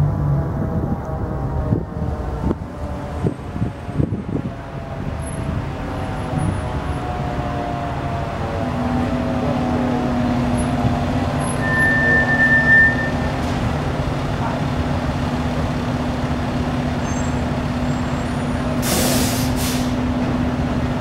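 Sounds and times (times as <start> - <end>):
short high beep: 11.6 - 13.3
diesel engine idling: 13.2 - 21.0
air brake hiss: 18.8 - 20.0.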